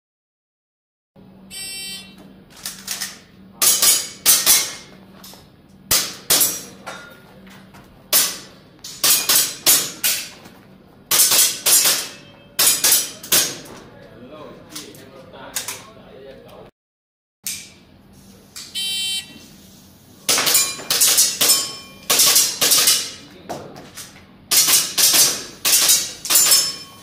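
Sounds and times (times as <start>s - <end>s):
shot timer beep: 1.5s - 2.2s, 18.8s - 19.4s.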